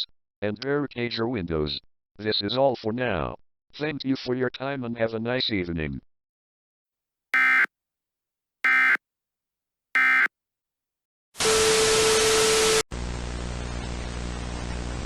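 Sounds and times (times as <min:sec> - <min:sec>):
digital data tone screech: 0:07.4 - 0:07.7, 0:08.7 - 0:09.0, 0:10.0 - 0:10.3.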